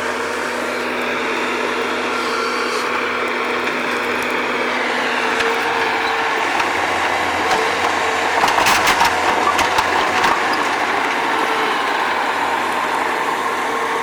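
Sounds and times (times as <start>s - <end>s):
loader engine running: 0.0s - 14.0s
sharp knocks and clatter: 5.4s - 11.2s.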